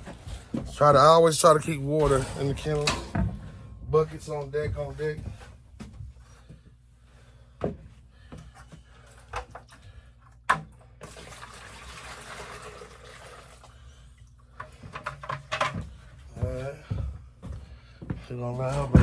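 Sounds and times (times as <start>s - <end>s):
water pouring into container: 11.0s - 14.0s.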